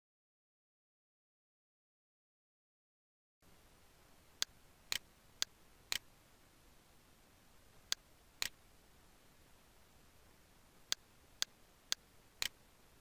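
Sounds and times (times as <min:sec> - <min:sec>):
faint steady hiss: 0:03.4 - 0:13.0
sharp clicks: 0:04.4 - 0:06.1, 0:07.8 - 0:08.6, 0:10.9 - 0:12.6.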